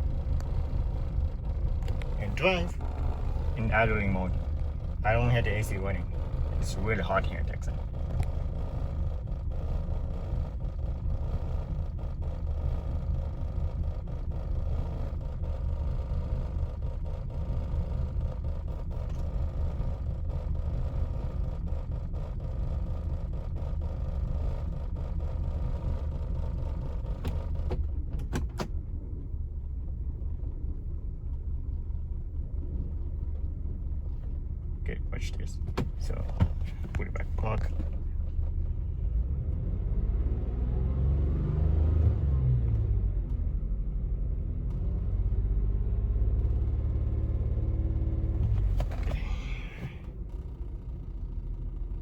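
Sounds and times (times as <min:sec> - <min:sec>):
car engine idling with misfire: 0:00.0 - 0:52.0.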